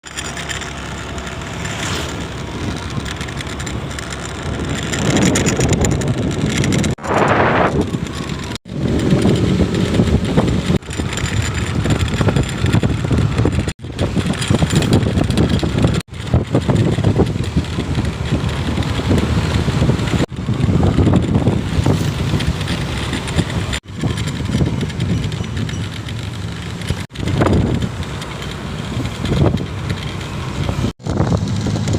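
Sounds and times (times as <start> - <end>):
bus passing at speed: 0.6 - 10.8, 16.2 - 25.4.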